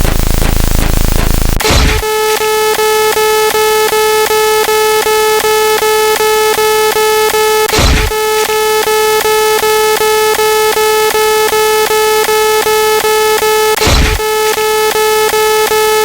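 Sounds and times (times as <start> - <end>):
deep noisy thumps: 0.0 - 2.1, 7.7 - 8.2
buzzy electronic pulsing tone: 0.0 - 16.0.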